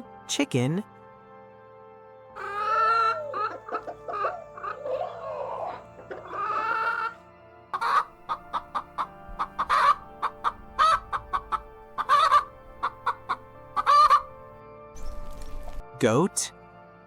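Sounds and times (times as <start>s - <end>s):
chicken squawking calls: 2.4s - 7.2s, 7.8s - 14.5s
chickens clucking: 2.4s - 7.2s, 7.8s - 14.5s.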